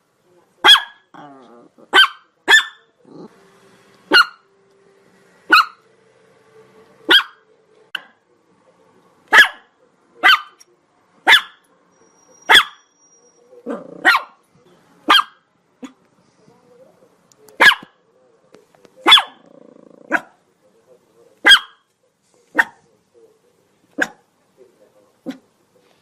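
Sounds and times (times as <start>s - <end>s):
small dog barking: 0.6s - 3.3s, 4.1s - 4.5s, 5.5s - 5.8s, 7.1s - 8.2s, 9.3s - 11.7s, 12.5s - 12.9s, 13.6s - 14.4s, 15.0s - 16.0s, 17.6s - 18.0s, 19.0s - 20.4s, 21.4s - 21.9s, 22.5s - 22.8s, 23.9s - 24.3s, 25.2s - 25.4s.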